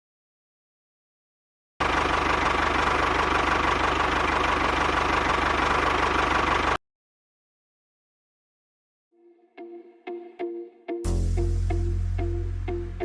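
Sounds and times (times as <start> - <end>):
engine running with knocking pulse: 1.8 - 6.8.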